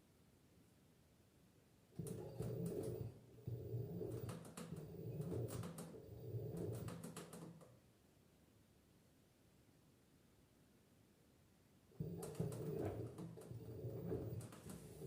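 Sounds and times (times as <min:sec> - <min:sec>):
washing machine motor humming: 0:02.0 - 0:07.2, 0:12.0 - 0:15.0.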